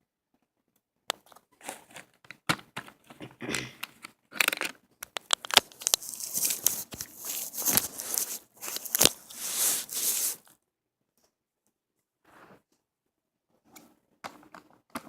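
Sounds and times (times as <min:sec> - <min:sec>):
packaging tearing and crinkling: 0:04.4 - 0:10.5.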